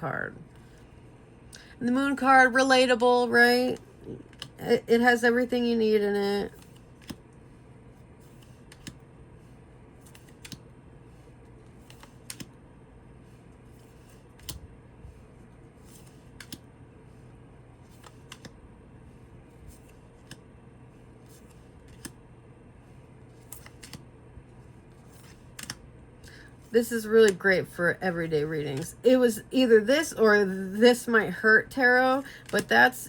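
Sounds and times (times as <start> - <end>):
faint low hum: 0.0 - 33.0
cards being flipped: 6.5 - 7.4, 8.2 - 12.6, 13.2 - 17.2, 17.8 - 18.6, 19.6 - 20.5, 21.2 - 22.2, 23.3 - 24.1, 24.9 - 25.8.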